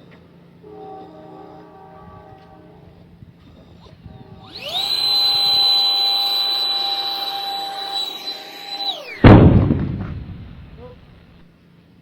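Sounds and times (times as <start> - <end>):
jet motor high whine: 0.0 - 11.5
plane hitting the ground thump: 9.2 - 11.2.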